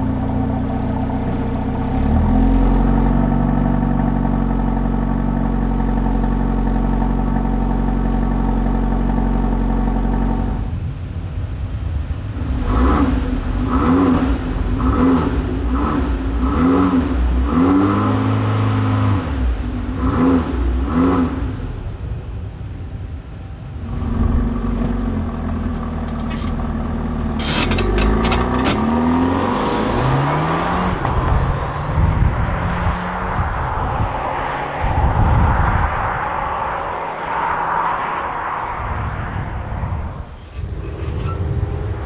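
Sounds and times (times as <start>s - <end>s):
car engine revving: 12.4s - 22.2s, 23.7s - 42.0s.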